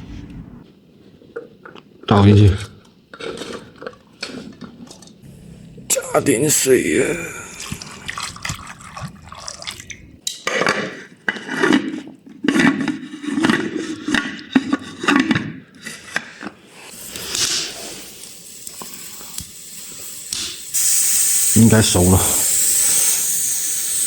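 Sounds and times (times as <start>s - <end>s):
steady hiss: 5.2s - 8.0s, 16.8s - 24.0s.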